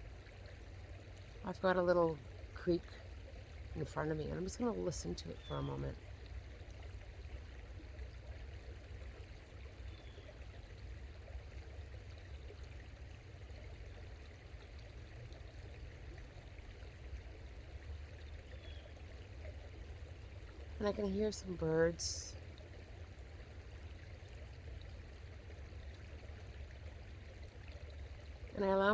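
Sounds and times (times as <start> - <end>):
forest creek babbling: 0.0 - 28.9
faint bird chirp: 9.8 - 10.5, 18.4 - 19.1.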